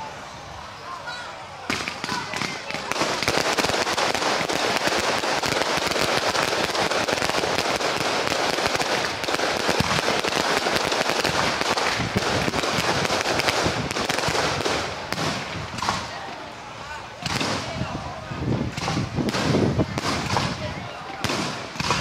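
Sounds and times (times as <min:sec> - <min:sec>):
firecrackers crackling: 0:01.5 - 0:22.0.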